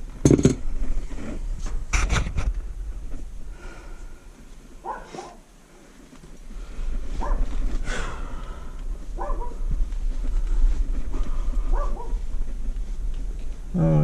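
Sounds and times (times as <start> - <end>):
dog barking: 4.8 - 5.5, 7.2 - 7.5, 9.2 - 9.6, 11.7 - 12.2.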